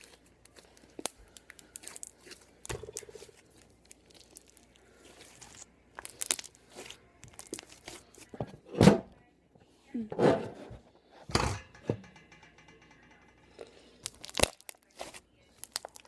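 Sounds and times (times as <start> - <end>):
slime crackling and popping: 0.0 - 8.1, 14.0 - 16.0.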